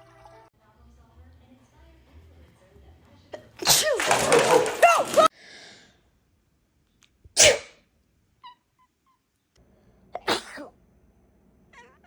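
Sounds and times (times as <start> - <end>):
person sneezing loudly: 3.6 - 5.3, 7.4 - 7.8, 10.2 - 10.7.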